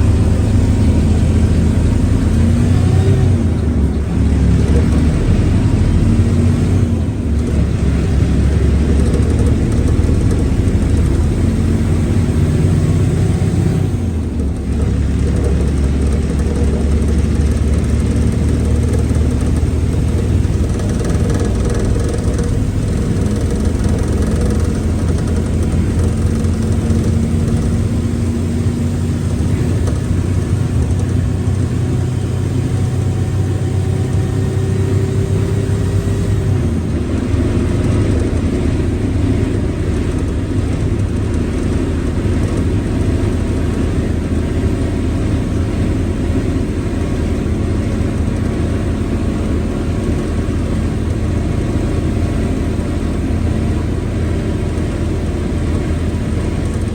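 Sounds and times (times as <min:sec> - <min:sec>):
bus diesel engine running: 0:00.0 - 0:56.9
gearbox growling and whining: 0:00.0 - 0:56.9.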